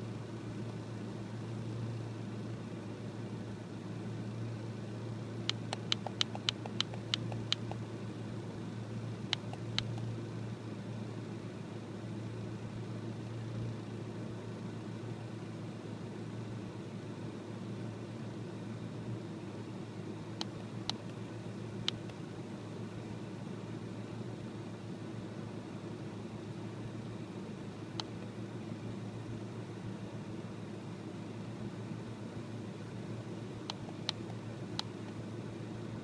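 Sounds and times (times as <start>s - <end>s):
engine idling with low hum: 0.0s - 36.0s
sharp clicks: 5.5s - 7.8s, 9.3s - 10.1s, 33.6s - 35.2s.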